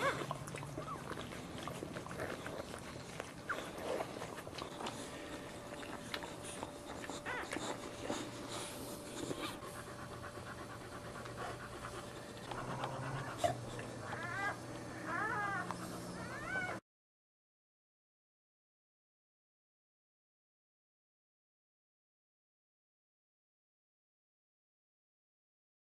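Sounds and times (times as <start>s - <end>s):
dog panting rapidly: 0.0s - 16.6s
dog whimpering: 0.0s - 16.8s.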